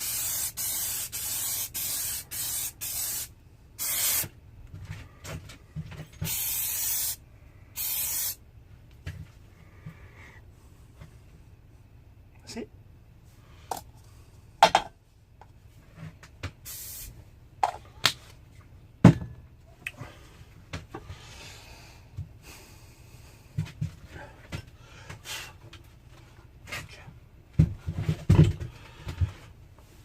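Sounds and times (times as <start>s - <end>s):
short hiss: 6.2s - 7.2s, 7.8s - 8.4s, 16.6s - 17.2s.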